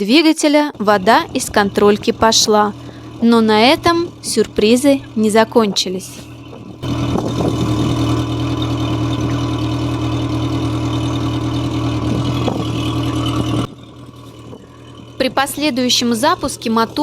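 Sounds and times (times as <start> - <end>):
outboard engine idling: 0.0 - 17.0.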